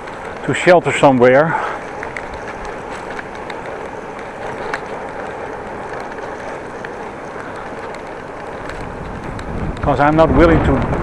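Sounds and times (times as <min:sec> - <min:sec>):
bike clicks and rattles: 0:00.0 - 0:11.0
tyre rumble on road: 0:00.0 - 0:11.0
wind on microphone: 0:07.6 - 0:11.0.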